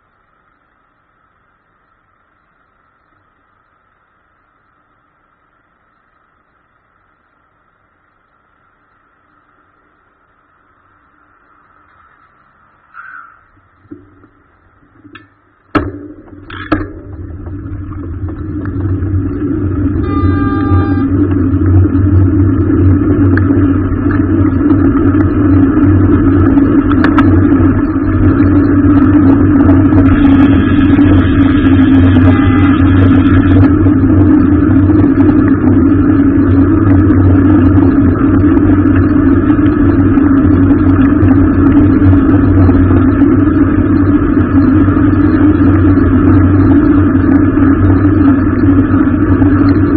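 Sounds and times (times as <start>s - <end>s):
car engine and road noise: 13.5s - 49.9s
faint higher tone: 19.2s - 22.9s, 27.9s - 33.7s.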